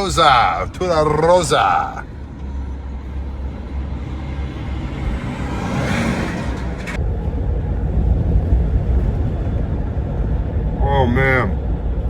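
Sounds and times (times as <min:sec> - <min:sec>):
rushing noise: 0:00.0 - 0:12.0
van engine and road rumble: 0:00.0 - 0:12.0.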